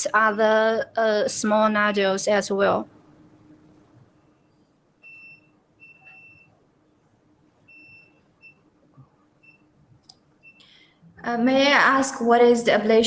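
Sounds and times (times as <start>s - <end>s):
faint high electronic beeps: 4.0s - 7.0s, 7.6s - 9.8s.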